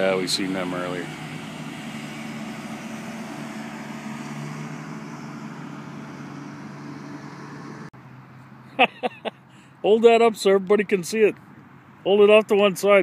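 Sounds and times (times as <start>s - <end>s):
motorboat engine humming: 0.0s - 8.8s.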